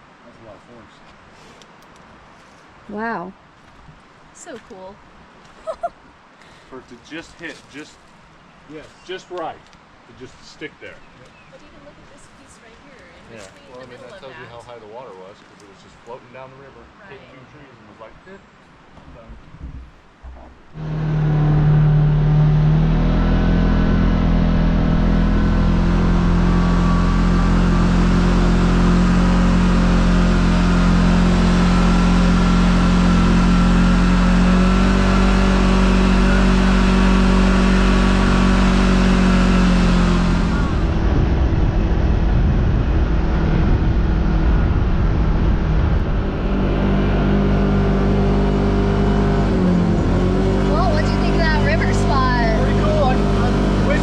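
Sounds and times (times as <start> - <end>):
utility vehicle engine droning: 19.0 - 54.0.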